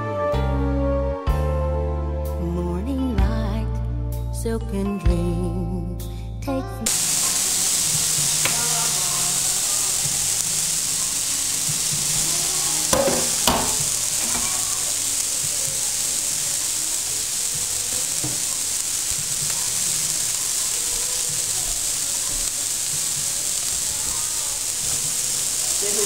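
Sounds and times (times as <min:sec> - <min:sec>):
food sizzling in a pan: 0:06.9 - 0:26.0
utensil knocks: 0:11.8 - 0:14.6.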